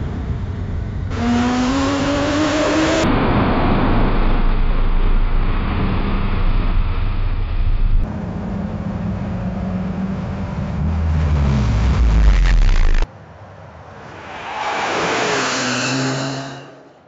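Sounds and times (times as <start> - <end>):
engine revving: 0.0 - 4.5, 8.0 - 13.1.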